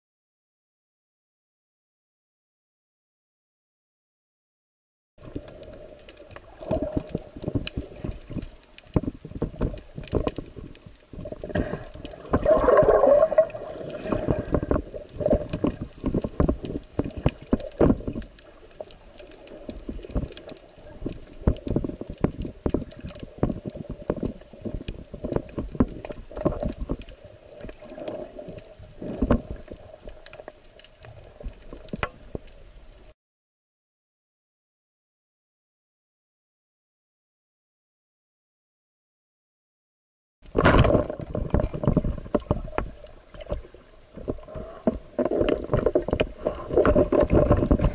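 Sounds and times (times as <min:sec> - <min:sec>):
underwater knocks and clicks: 0:05.2 - 0:33.1, 0:40.4 - 0:47.9
underwater water movement: 0:05.2 - 0:33.1, 0:40.4 - 0:47.9.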